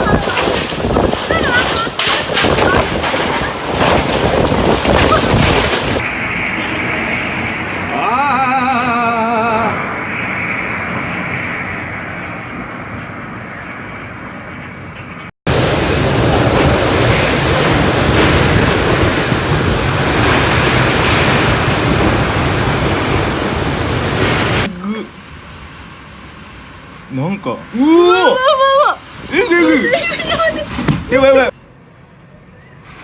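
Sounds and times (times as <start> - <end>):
rain: 0.0 - 6.1, 15.5 - 31.5
storm wind rushing: 0.0 - 13.4, 15.5 - 27.1.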